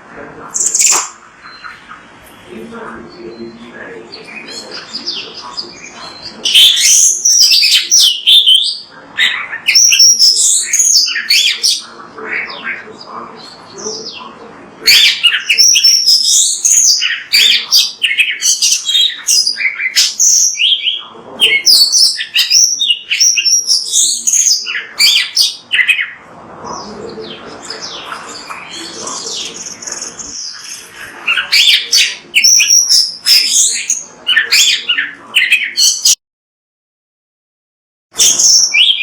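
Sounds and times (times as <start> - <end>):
bird singing whistles and chirps: 4.3 - 11.8, 28.7 - 36.2, 38.2 - 39.0.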